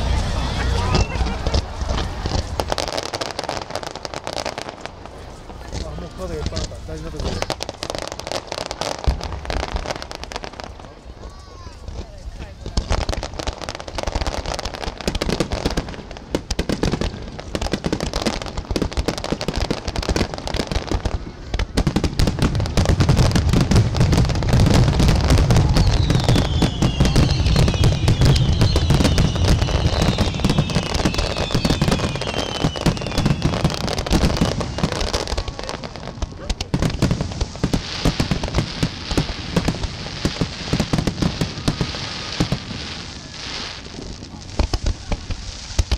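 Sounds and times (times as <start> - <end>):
fireworks bursting and crackling: 0.0 - 45.9
rumble of fireworks booms: 0.0 - 45.9
high falling whistles: 25.6 - 33.7.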